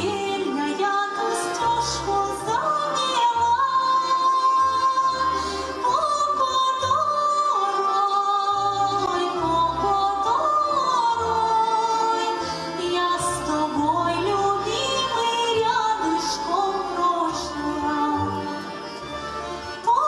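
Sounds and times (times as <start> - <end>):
instrumental accompaniment: 0.0 - 20.0.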